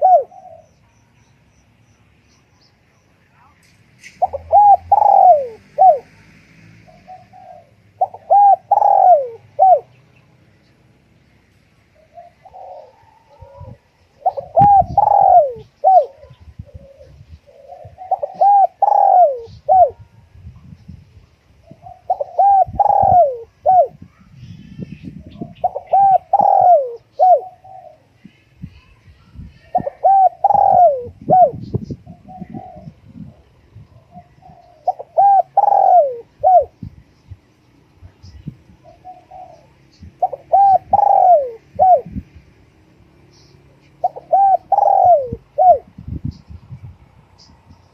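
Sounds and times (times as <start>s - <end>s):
dove cooing: 0.0s - 0.8s, 4.2s - 10.0s, 11.9s - 20.2s, 21.6s - 24.1s, 25.2s - 28.2s, 29.7s - 37.3s, 38.3s - 42.2s, 43.2s - 46.4s.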